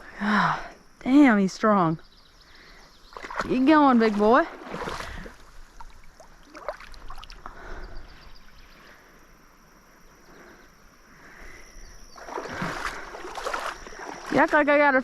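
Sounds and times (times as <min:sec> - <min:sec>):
water sloshing and splashing: 0:03.1 - 0:07.9, 0:12.0 - 0:15.0
rush of water: 0:03.3 - 0:07.8, 0:12.2 - 0:14.8.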